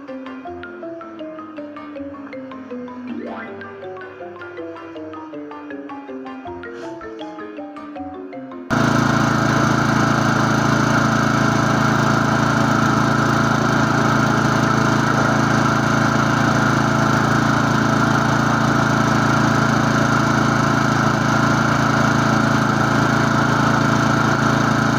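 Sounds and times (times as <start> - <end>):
lawn mower engine running: 8.7 - 24.9.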